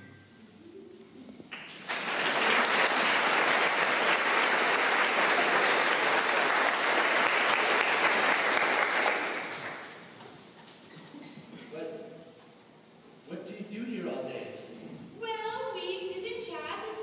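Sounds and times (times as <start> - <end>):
audience applauding: 1.5 - 10.2.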